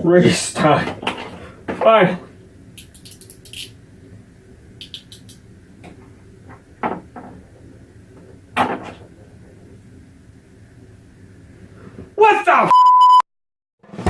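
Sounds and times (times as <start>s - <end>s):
plastic toy clicking and knocking: 2.8s - 3.7s, 4.8s - 6.0s.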